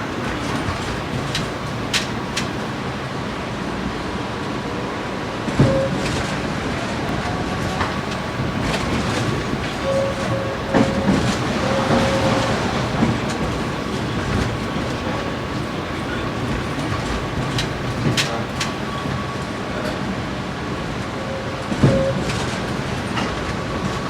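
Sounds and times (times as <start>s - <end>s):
wheels clacking over rail joints: 0.0s - 2.7s, 7.6s - 19.2s
tram rumbling on rails: 0.0s - 24.0s
faint whine: 8.0s - 19.0s.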